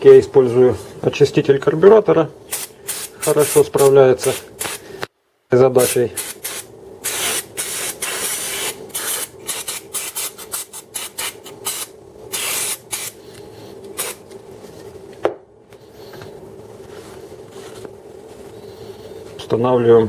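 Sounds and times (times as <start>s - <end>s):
aerosol spray hissing: 2.5s - 4.9s, 5.8s - 13.2s, 13.9s - 14.2s.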